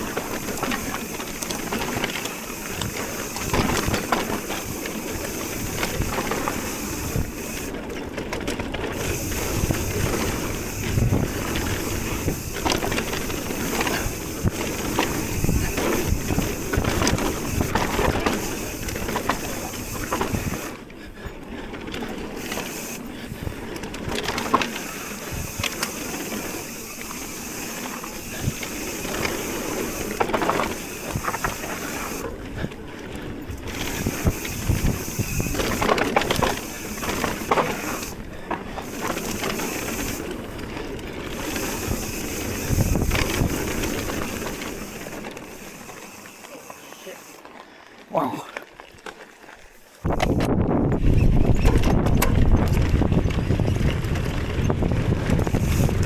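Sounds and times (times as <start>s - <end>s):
bike knocks and rattles: 0.0s - 20.8s, 21.5s - 45.9s, 50.1s - 56.0s
tyres crunching on dirt: 0.0s - 50.8s
rushing air noise: 41.3s - 45.8s.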